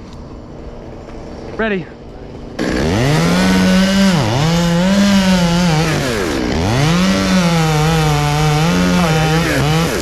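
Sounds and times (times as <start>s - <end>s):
chainsaw cutting wood: 2.6s - 10.0s.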